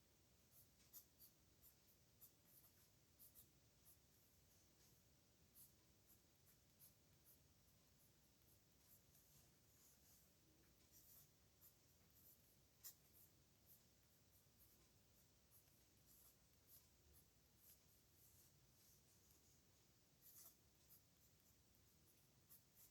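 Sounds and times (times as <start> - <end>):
pen scratching on paper: 0.5 - 19.3, 20.2 - 22.9.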